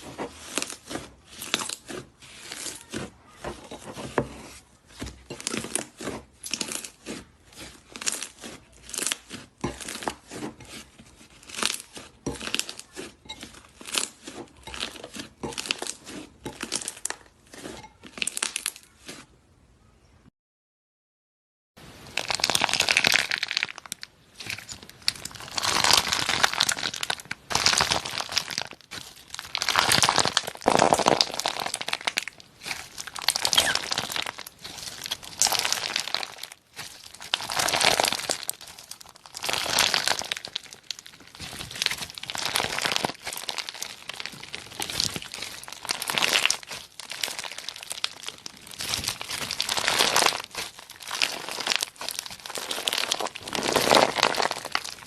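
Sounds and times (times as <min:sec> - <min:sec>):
slime crackling when squeezed: 0:22.1 - 0:55.0.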